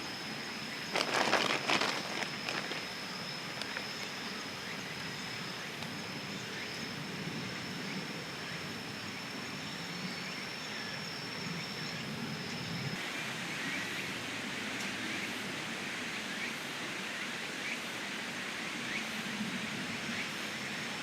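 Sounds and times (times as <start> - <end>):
low outdoor hiss: 0.0 - 21.0
insect trilling: 0.2 - 12.9.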